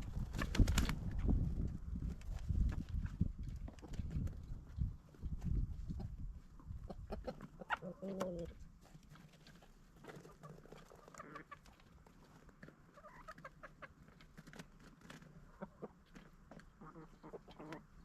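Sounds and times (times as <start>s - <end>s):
chickens clucking: 2.9s - 14.4s, 15.1s - 18.0s.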